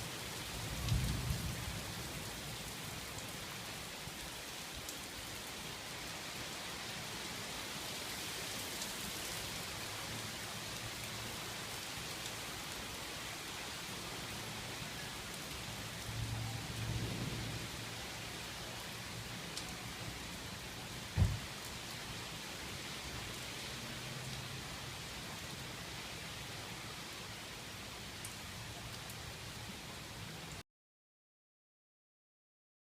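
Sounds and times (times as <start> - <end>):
heavy rain falling: 0.0 - 30.6
sharp low thump: 21.2 - 21.5.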